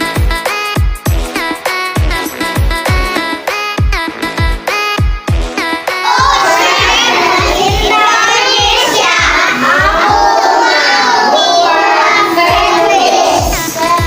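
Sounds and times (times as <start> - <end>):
electronic dance music: 0.0 - 14.0
children singing and shouting: 5.6 - 14.0.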